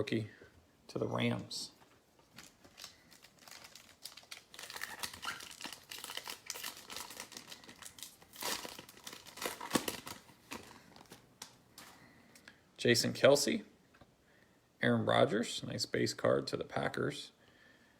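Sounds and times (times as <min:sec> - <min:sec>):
plastic wrapper crinkling and tearing: 0:02.2 - 0:11.9.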